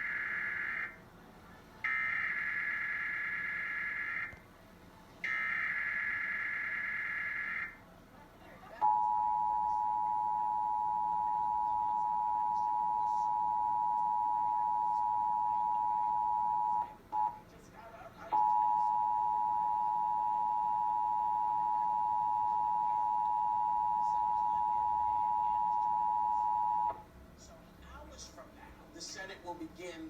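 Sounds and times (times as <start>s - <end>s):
two-tone alarm tone: 0.0s - 1.0s, 1.9s - 4.4s, 5.3s - 7.8s, 8.8s - 17.4s, 18.4s - 27.0s.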